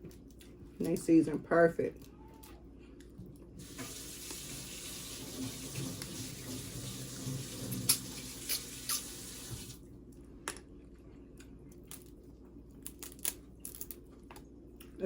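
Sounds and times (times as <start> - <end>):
eating noises: 7.7 - 9.3
crab shells cracking: 11.8 - 14.1.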